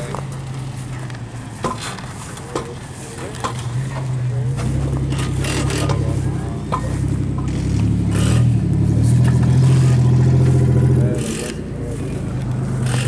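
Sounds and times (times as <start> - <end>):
car engine revving: 3.4 - 13.0.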